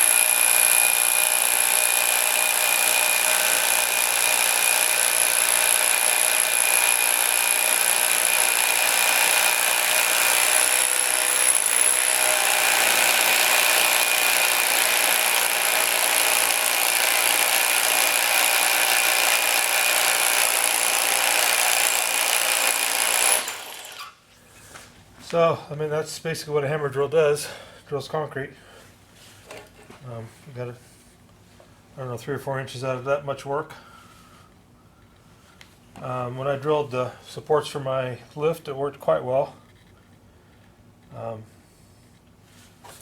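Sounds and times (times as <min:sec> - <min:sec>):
hammer drill boring into concrete: 0:00.0 - 0:24.2.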